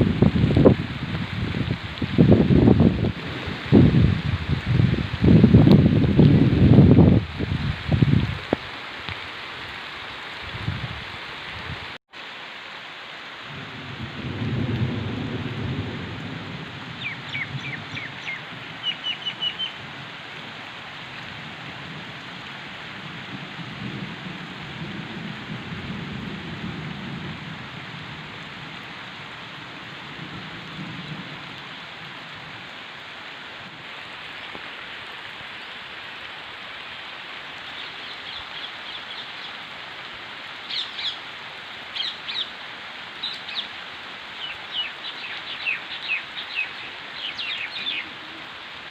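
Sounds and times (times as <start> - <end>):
steady rain falling: 0.0 - 48.9
bird chirping: 17.0 - 19.8, 44.4 - 48.2.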